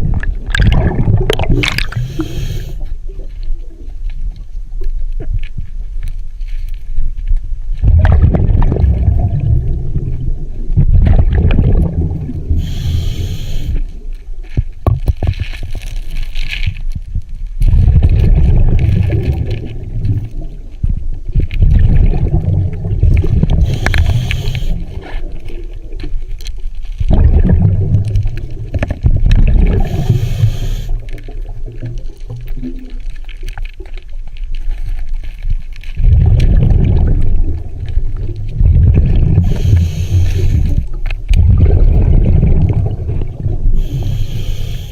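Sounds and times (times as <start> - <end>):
rumbling exhaled bubbles: 0.0 - 5.4, 7.7 - 16.2, 17.6 - 44.9
regulator inhale hiss: 1.8 - 2.9, 12.5 - 13.9, 23.6 - 25.0, 29.8 - 31.1, 39.4 - 40.9, 43.8 - 44.9.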